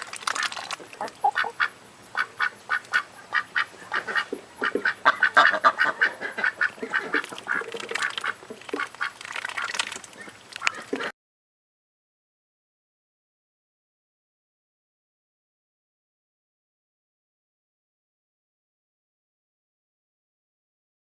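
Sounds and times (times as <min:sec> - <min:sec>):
ducks quacking: 0:00.2 - 0:11.1.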